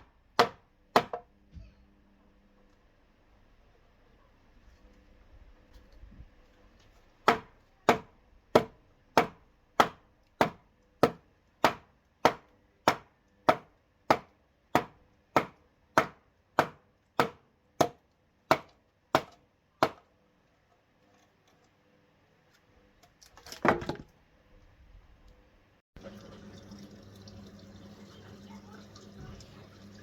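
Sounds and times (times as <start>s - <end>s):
tool striking wood: 0.4s - 1.3s, 7.2s - 20.0s.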